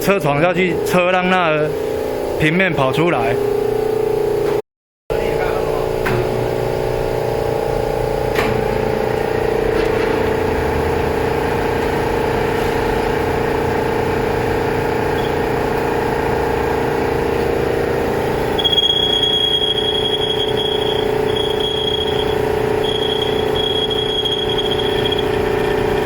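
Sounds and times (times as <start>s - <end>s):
metal lathe humming: 5.7s - 26.0s.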